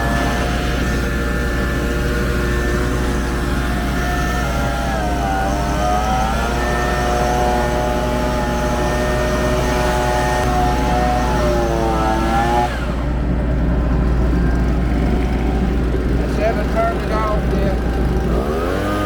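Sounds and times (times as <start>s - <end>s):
combine harvester engine drone: 0.0s - 19.0s
pitched whine: 0.0s - 19.0s.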